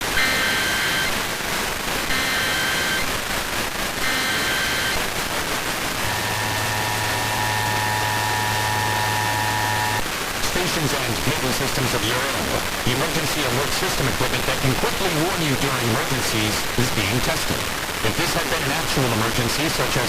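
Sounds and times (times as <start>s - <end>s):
two-tone attention signal: 0.0s - 1.2s, 2.1s - 3.1s, 4.0s - 5.1s, 6.0s - 10.0s
data tone bursts: 0.0s - 1.4s, 2.0s - 3.2s, 4.0s - 5.2s, 6.0s - 10.0s
static hiss: 0.0s - 20.0s.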